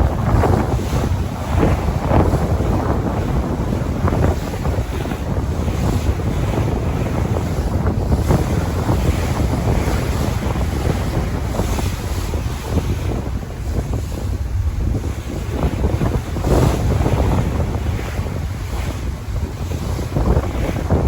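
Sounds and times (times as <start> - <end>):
ocean waves breaking: 0.0 - 21.0
wind noise on microphone: 0.0 - 21.0.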